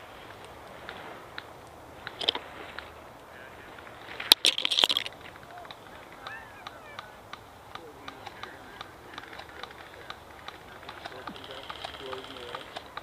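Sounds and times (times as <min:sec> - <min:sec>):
faint ticks: 0:00.3 - 0:13.0
faint chirps: 0:05.2 - 0:13.0.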